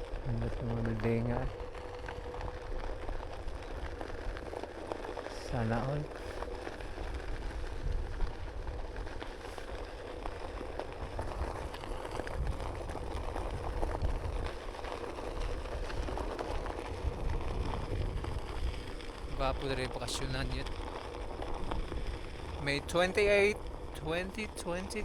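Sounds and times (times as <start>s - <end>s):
tyre rumbling on pavement: 0.0s - 24.0s
faint steady hum: 0.0s - 25.0s
wind buffeting microphone: 10.2s - 24.1s.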